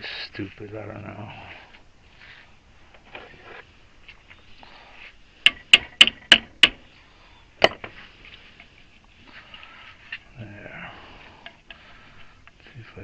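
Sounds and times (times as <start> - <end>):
sharp knocks: 5.4 - 6.8.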